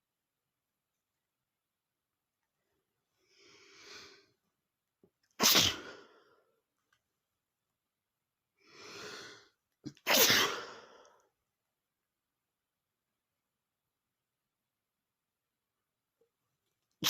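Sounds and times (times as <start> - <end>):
breathy intake of breath: 3.2 - 4.4, 8.6 - 9.6
man sneezing: 5.4 - 6.0, 9.9 - 10.8.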